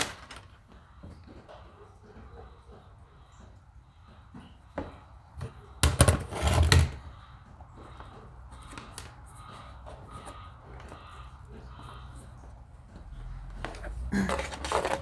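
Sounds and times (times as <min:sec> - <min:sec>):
hard objects clattering: 0:12.8 - 0:15.0.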